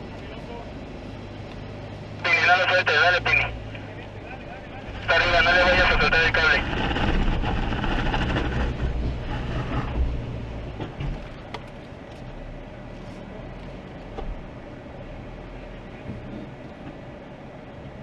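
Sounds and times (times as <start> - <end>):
vehicle engine rumbling: 0.0 - 18.0.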